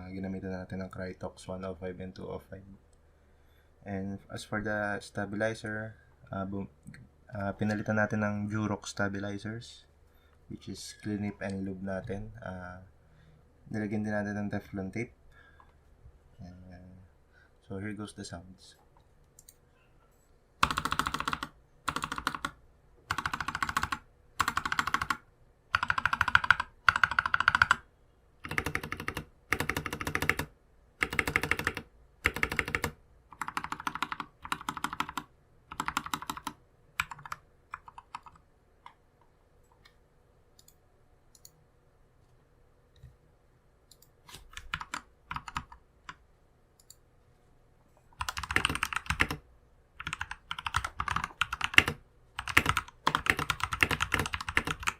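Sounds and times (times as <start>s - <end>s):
mechanical keyboard typing: 20.6s - 27.8s, 28.4s - 38.4s, 44.6s - 45.8s, 48.2s - 49.4s, 50.0s - 54.9s.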